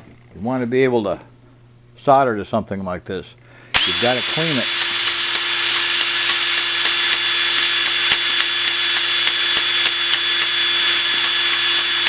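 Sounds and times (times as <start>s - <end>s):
rotary tool wire brush scouring: 3.8s - 12.0s.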